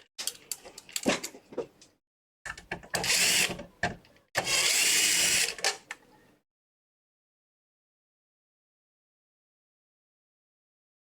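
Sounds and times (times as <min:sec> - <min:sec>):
electric screwdriver whirring: 0:03.0 - 0:03.6, 0:04.4 - 0:05.6.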